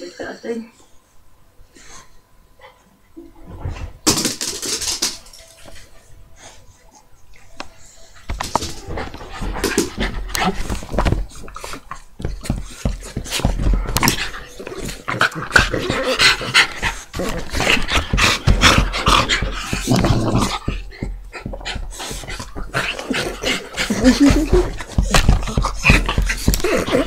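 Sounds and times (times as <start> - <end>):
dog panting: 8.8 - 27.0.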